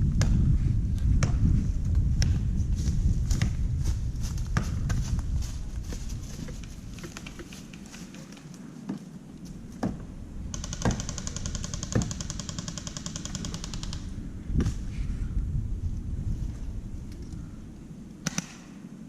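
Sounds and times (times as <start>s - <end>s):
single sharp cracks: 18.2s - 18.7s.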